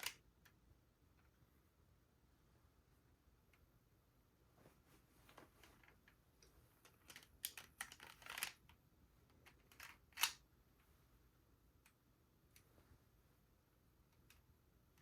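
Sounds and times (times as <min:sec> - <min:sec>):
plastic toy pistol clicking: 0:09.8 - 0:10.4.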